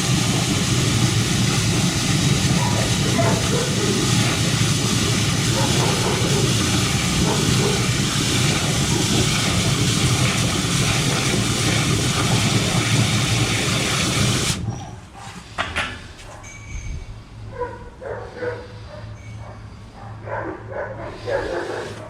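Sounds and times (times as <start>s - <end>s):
high-pressure water hose hissing: 0.0s - 14.7s.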